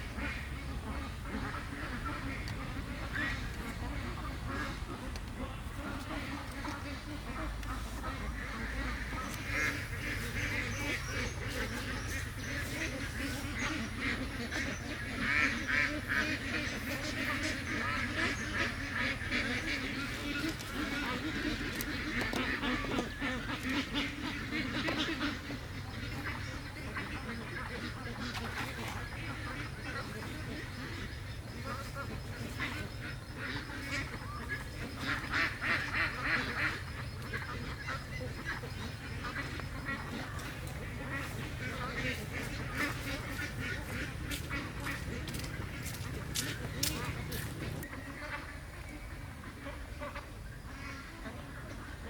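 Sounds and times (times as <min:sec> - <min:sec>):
ducks quacking: 0:00.0 - 0:52.0
steady low rumble: 0:29.0 - 0:48.3.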